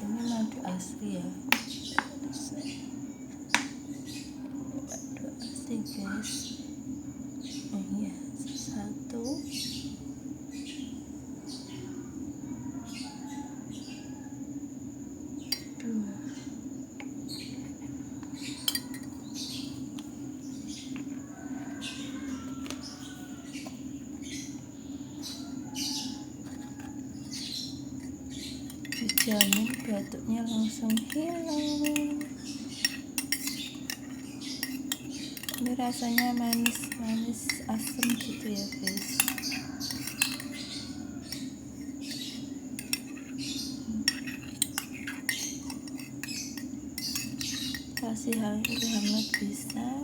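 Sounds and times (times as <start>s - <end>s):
spoon scraping in a glass: 18.4s - 19.8s, 25.2s - 50.0s
spoon clinking against glass: 18.6s - 19.2s, 26.4s - 50.0s
steady low hum: 22.8s - 50.0s.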